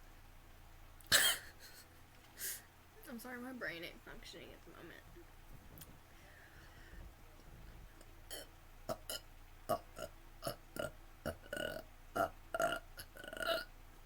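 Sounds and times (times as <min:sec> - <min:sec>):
girl burping: 0:01.1 - 0:01.5, 0:08.3 - 0:13.7.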